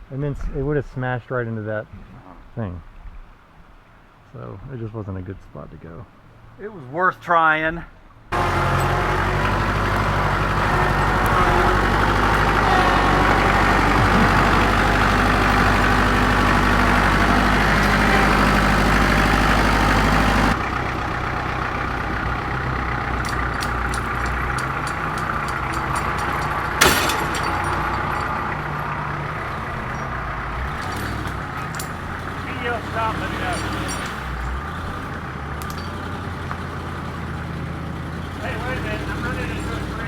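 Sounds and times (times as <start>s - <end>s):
vehicle engine running: 8.3s - 40.0s
rattles: 8.4s - 40.0s.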